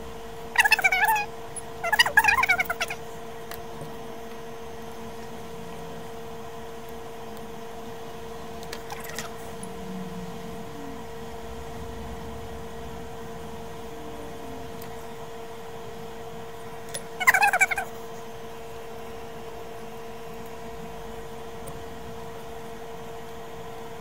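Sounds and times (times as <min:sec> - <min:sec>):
electrical hum with hiss: 0:00.0 - 0:24.0.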